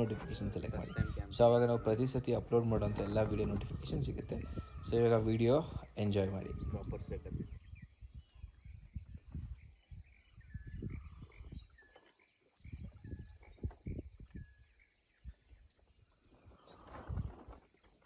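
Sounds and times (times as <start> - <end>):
short bird calls: 0.0 - 7.9
insects chirping: 0.0 - 18.0.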